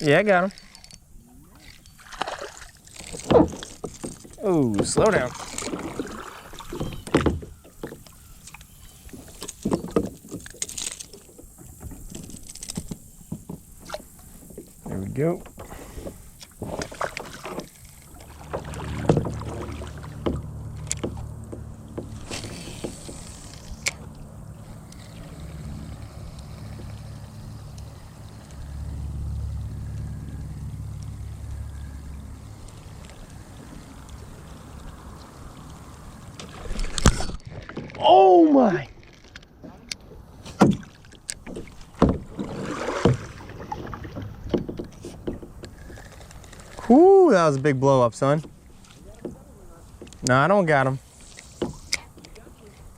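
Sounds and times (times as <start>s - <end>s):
knocks and clatter on kayak: 2.0s - 8.2s, 9.2s - 24.1s, 40.5s - 46.9s, 48.2s - 50.4s.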